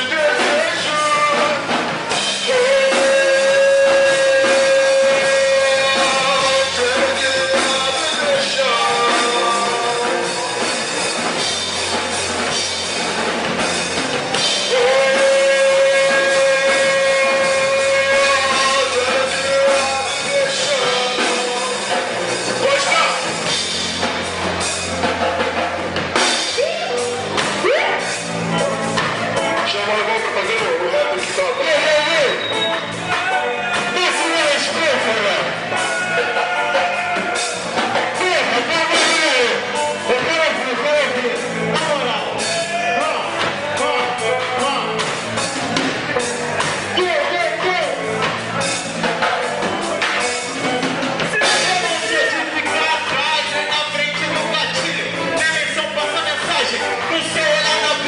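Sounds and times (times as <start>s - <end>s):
rock band playing live: 0.0s - 58.0s
person singing long notes: 2.2s - 10.8s, 14.4s - 22.4s.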